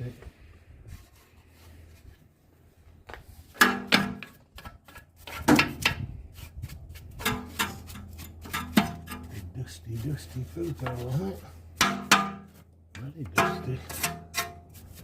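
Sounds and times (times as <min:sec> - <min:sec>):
steady low hum: 0:05.8 - 0:15.0.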